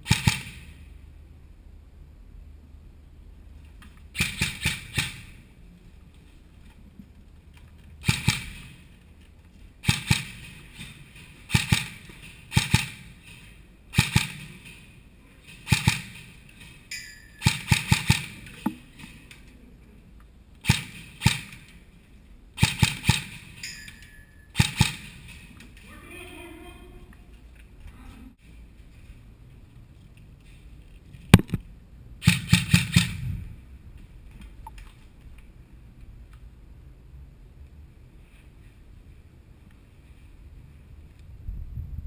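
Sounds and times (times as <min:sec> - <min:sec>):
airsoft guns firing bursts: 0:00.0 - 0:00.8, 0:04.1 - 0:05.4, 0:08.0 - 0:08.8, 0:09.8 - 0:13.2, 0:13.9 - 0:14.7, 0:15.6 - 0:16.4, 0:17.4 - 0:18.6, 0:20.6 - 0:21.7, 0:22.6 - 0:23.5, 0:24.6 - 0:25.4, 0:32.2 - 0:33.3.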